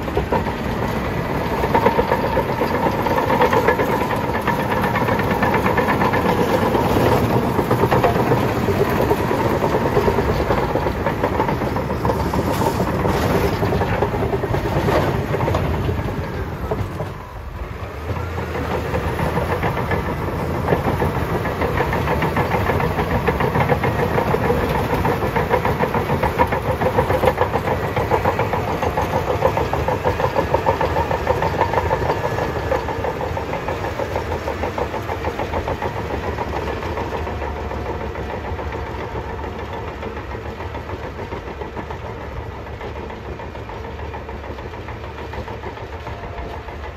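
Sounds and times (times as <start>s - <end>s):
bulldozer diesel engine rumbling: 0.0s - 46.9s.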